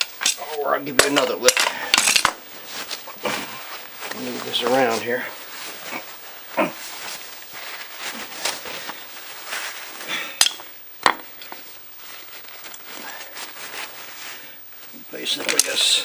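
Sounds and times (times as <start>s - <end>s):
metal tools clinking: 0.2s - 2.4s.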